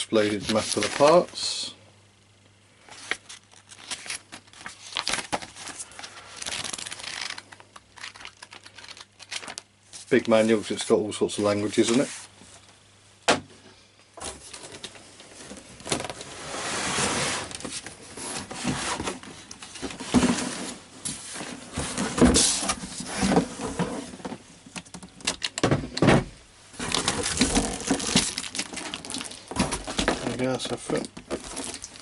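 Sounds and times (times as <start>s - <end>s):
packaging rustling and crinkling: 0.2s - 1.4s, 2.9s - 10.9s, 26.7s - 32.0s.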